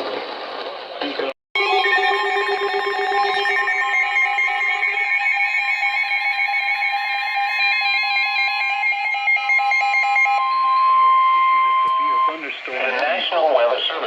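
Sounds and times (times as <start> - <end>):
rapidly stepping higher tones: 1.6 - 12.6
steady electronic alert tones: 1.6 - 13.0.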